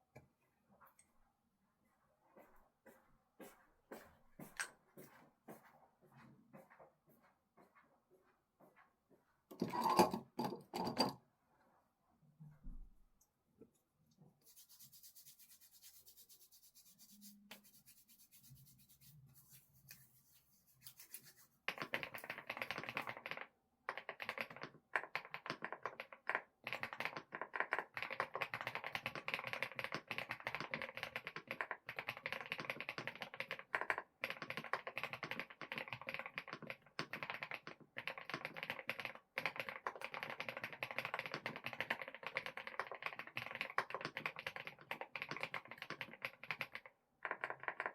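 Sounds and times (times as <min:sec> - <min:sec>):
fast keyboard typing: 0:21.1 - 0:47.9.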